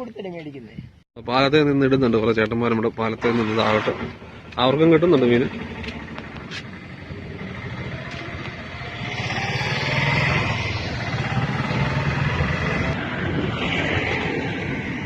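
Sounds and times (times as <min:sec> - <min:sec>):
vehicle passing by: 0:03.3 - 0:15.0.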